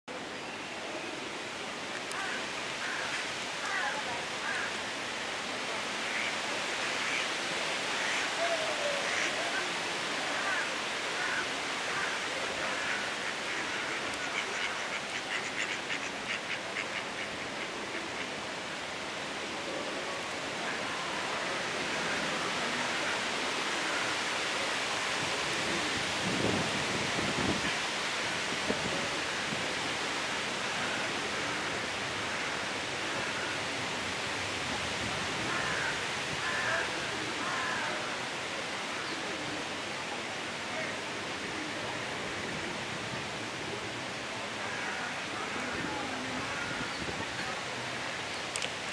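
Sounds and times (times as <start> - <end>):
mallard quacking: 14.3 - 17.4
faint click: 48.5 - 48.8.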